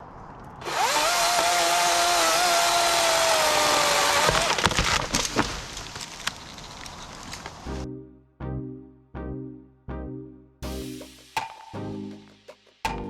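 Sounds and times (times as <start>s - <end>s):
chainsaw cutting: 0.6s - 6.3s
wood cracking and snapping: 0.9s - 7.7s.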